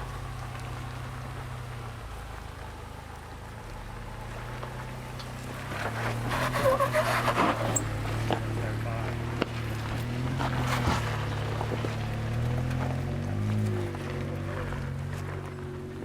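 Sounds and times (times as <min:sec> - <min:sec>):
crackling crunching noise: 0:00.0 - 0:16.0
truck engine idling: 0:00.0 - 0:16.0.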